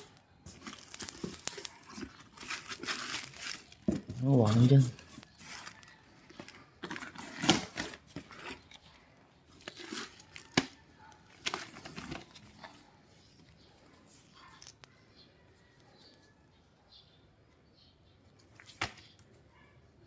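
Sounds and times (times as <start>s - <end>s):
packaging crinkling and rustling: 0.0s - 14.9s.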